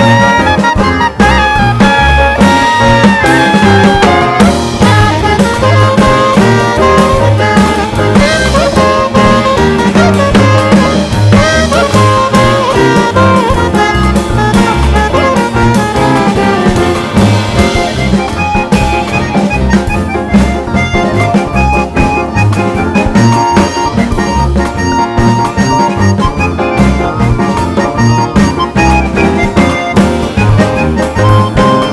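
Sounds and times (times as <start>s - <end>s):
brass instruments: 0.0s - 31.9s
steady drum beat: 0.0s - 31.9s.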